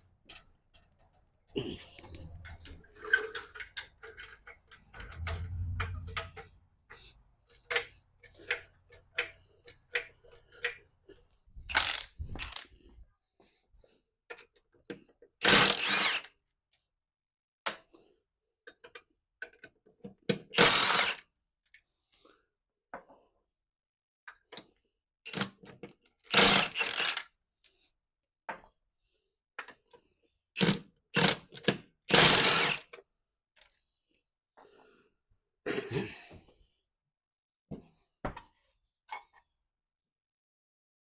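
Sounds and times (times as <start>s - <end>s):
metal tools clicking and clanking: 0.2s - 6.5s.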